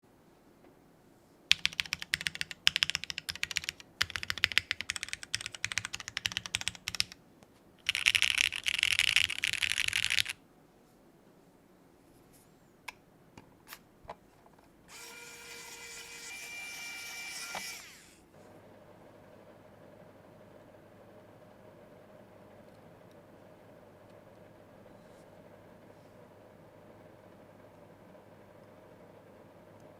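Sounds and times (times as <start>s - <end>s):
mechanical keyboard typing: 1.5s - 7.2s, 7.8s - 10.4s
steady whirring hum: 9.6s - 29.9s.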